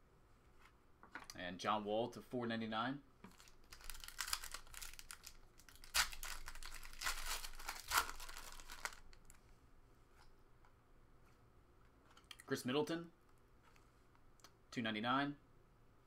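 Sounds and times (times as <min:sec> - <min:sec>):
foil wrapper tearing and crinkling: 0:03.3 - 0:09.4.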